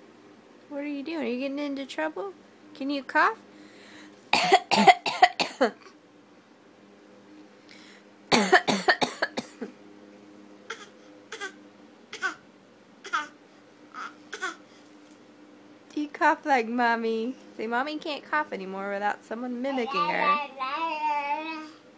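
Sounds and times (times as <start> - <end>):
baby coughing: 4.3 - 5.8, 8.3 - 9.7, 10.7 - 12.4, 13.0 - 14.6.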